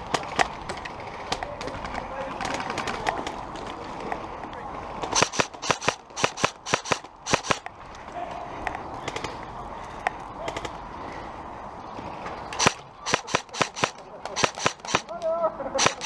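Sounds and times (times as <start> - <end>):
airsoft guns firing: 5.1 - 7.7, 12.6 - 15.2, 15.8 - 16.0.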